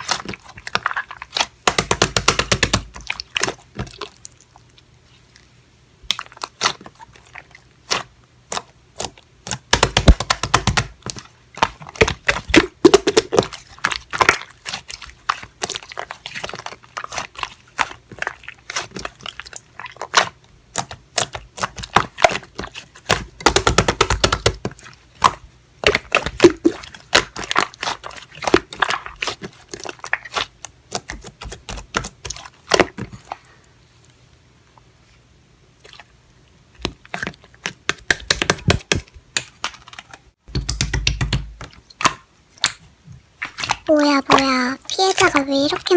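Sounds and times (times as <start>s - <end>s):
slime squelching: 0.0s - 45.9s
slime crackling and popping: 6.0s - 33.0s.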